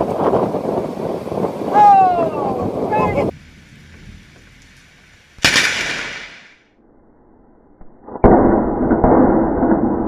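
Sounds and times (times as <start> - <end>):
thunder rumbling: 0.0 - 6.6
thunderclap: 0.0 - 6.6.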